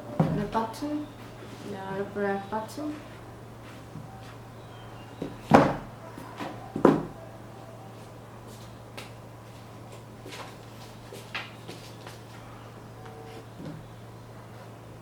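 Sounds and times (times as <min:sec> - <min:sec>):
faint low hum: 0:00.0 - 0:15.0
knocks on shoe box: 0:05.2 - 0:05.9, 0:06.8 - 0:07.1.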